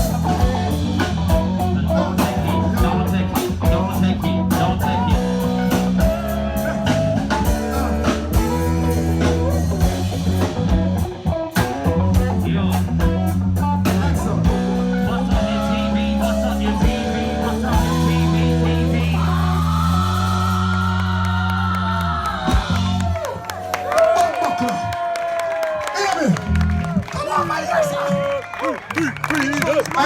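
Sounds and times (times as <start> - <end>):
guitar lines: 0.0 - 20.1
bass notes: 0.0 - 24.1.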